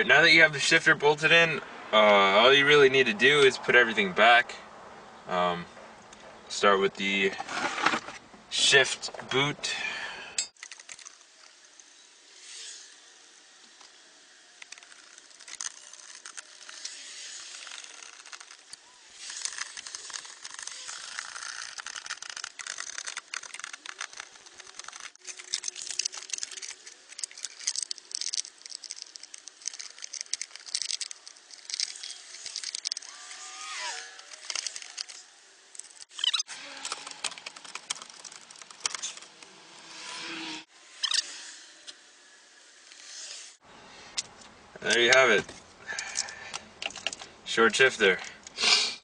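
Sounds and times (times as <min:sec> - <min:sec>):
rustling: 0:14.4 - 0:41.8
clicks and rattles of parts handled: 0:17.6 - 0:33.1, 0:34.0 - 0:35.2, 0:35.8 - 0:39.5, 0:44.2 - 0:47.3.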